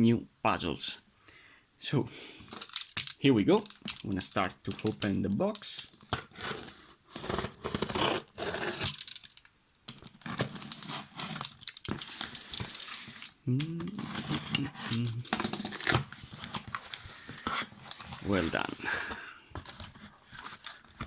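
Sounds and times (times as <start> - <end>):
cardboard rustling and scraping: 5.8 - 9.0, 10.0 - 21.0
packing tape tearing: 5.9 - 18.6
short voice sound: 13.5 - 15.3.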